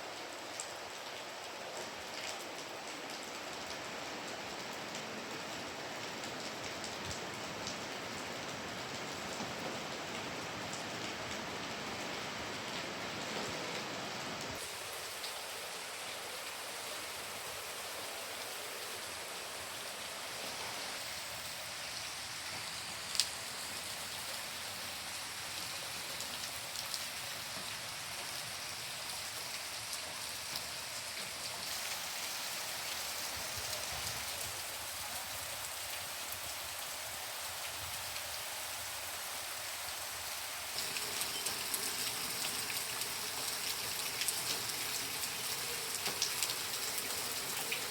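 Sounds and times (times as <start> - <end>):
heavy rain hissing: 11.4 - 47.9.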